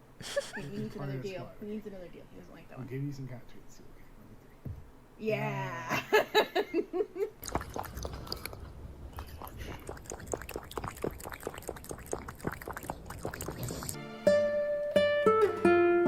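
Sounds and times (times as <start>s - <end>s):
short laugh-like voiced sounds: 0.2s - 0.8s.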